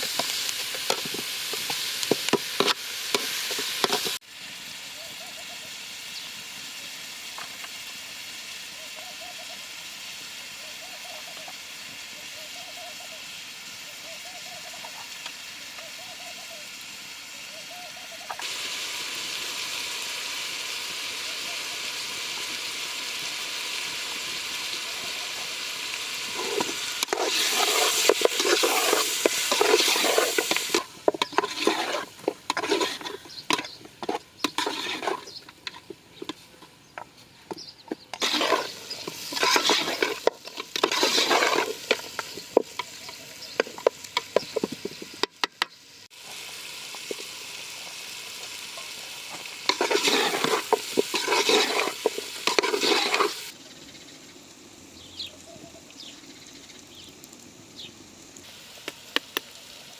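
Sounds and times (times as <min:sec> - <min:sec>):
utensil scraping a pan: 0:00.0 - 0:04.2, 0:26.1 - 0:45.3, 0:48.8 - 0:53.5
food sizzling in a pan: 0:00.0 - 0:36.6, 0:37.5 - 0:59.9.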